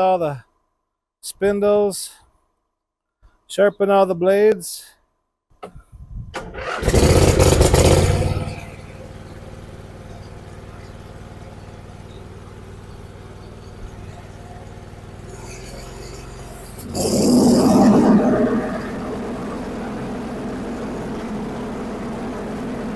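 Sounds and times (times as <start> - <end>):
mower engine starting and idling: 6.4 - 22.9.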